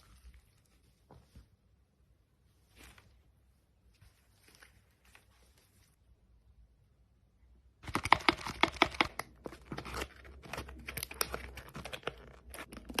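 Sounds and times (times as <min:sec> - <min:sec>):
plastic packaging crinkling: 0:07.8 - 0:13.0.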